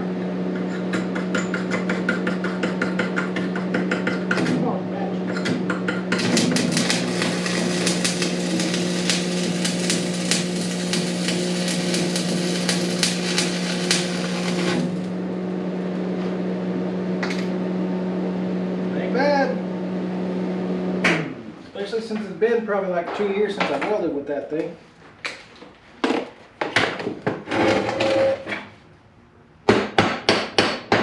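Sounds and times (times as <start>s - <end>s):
steady low hum: 0.0s - 23.0s
welding arc crackling: 6.1s - 15.2s.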